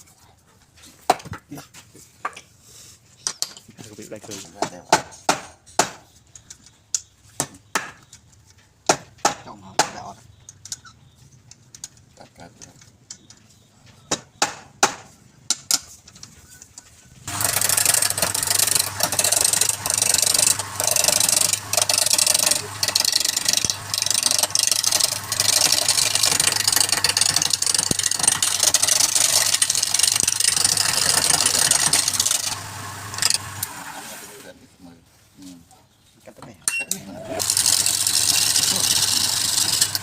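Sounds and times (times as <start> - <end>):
tool cutting spinning wood: 17.2 - 34.4, 37.2 - 40.0
lathe motor humming: 17.3 - 33.9, 37.4 - 40.0.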